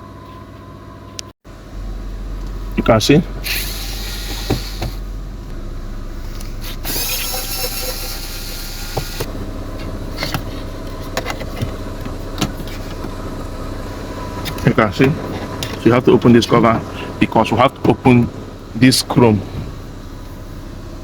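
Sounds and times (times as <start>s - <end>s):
car interior mechanical hum: 1.5s - 21.0s
hiss: 3.4s - 5.0s, 6.6s - 9.3s.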